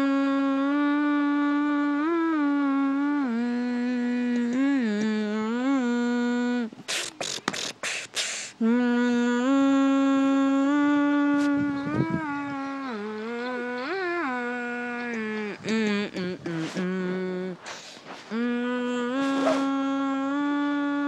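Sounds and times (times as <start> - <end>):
person humming: 0.0 - 21.0
short breathy bursts: 6.9 - 8.6, 17.6 - 18.4, 19.2 - 19.8.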